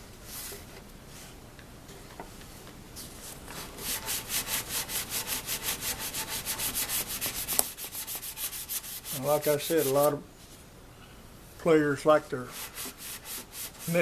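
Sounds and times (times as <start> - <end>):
sanding sponge rubbing on wood: 3.6 - 10.2, 12.4 - 14.0.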